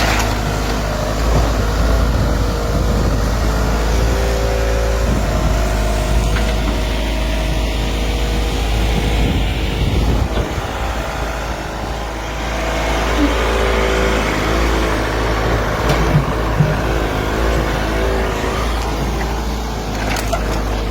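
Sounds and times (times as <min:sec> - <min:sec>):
excavator diesel engine running: 0:00.0 - 0:20.9.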